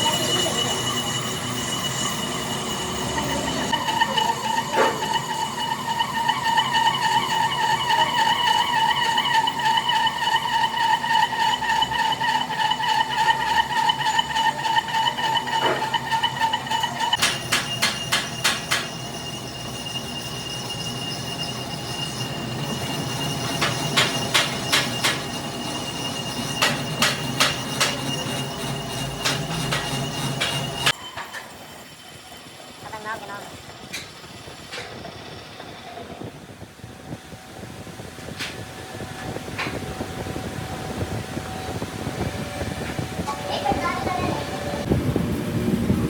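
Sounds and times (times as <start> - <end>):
metalworking machine whining: 0.0 - 46.0
sharp metallic clicks and knocks: 17.2 - 18.9.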